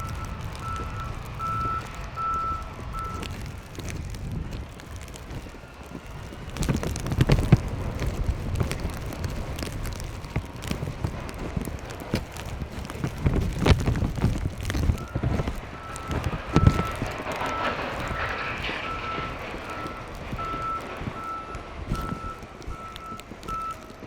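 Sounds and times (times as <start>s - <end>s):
vehicle reversing alarm beeping: 0.0s - 4.0s, 14.9s - 24.0s
wind buffeting microphone: 0.0s - 24.0s.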